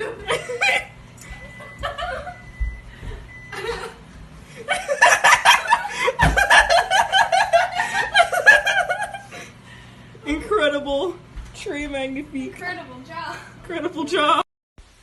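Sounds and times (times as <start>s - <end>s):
people laughing: 0.0s - 9.6s.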